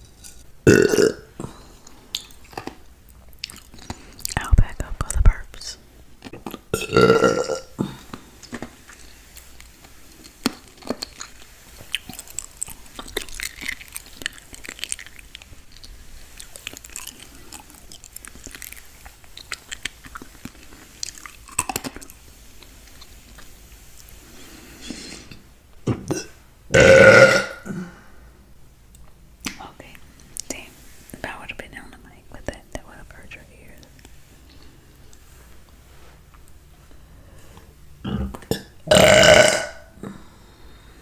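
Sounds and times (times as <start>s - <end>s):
woman burping: 0.6s - 1.4s, 6.7s - 8.0s, 26.1s - 28.0s, 38.0s - 40.1s
woman chewing and mouth smacks: 1.5s - 4.5s, 6.2s - 6.8s, 8.0s - 25.5s.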